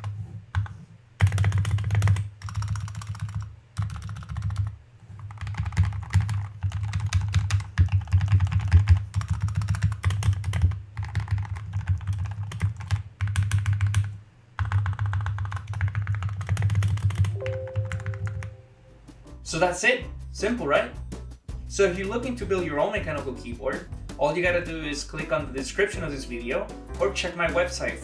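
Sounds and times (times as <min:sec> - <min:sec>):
mechanical keyboard typing: 0:00.0 - 0:18.6.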